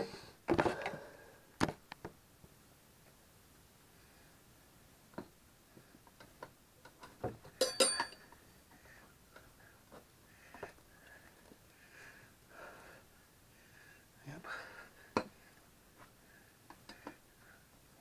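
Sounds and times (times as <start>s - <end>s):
sharp ringing clinks: 7.6s - 8.3s.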